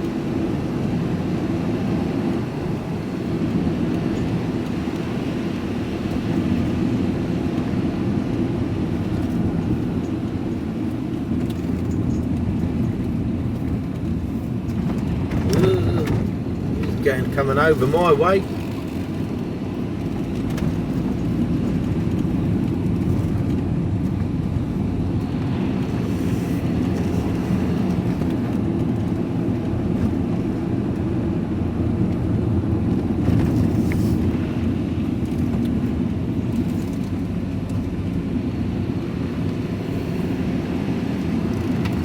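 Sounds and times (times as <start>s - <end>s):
tyres on wet road: 0.0s - 42.0s
vehicle engine running: 0.0s - 42.0s.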